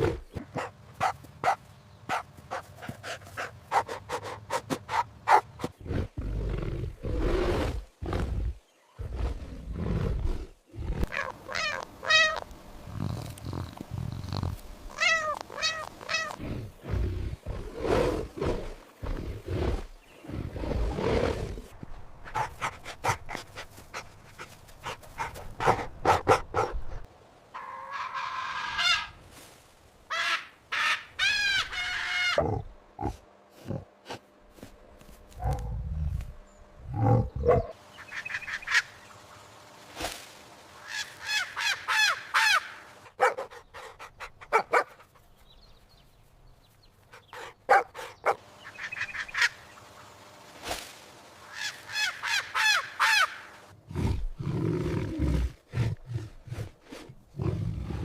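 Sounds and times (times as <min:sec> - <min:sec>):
high pitched animal cries: 0:11.1 - 0:12.4, 0:14.9 - 0:16.4
animal roars and growls: 0:16.2 - 0:21.8, 0:53.9 - 0:58.0.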